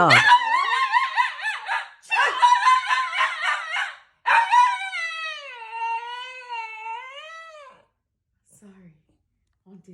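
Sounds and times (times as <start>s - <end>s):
dog howling: 0.0s - 7.9s.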